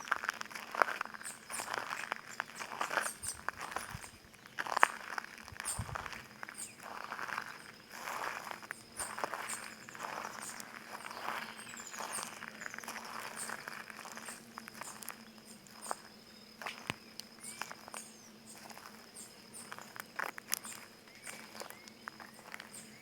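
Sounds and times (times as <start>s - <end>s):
footsteps crunching on stony ground: 0.0s - 23.0s
birds chirping: 5.6s - 23.0s.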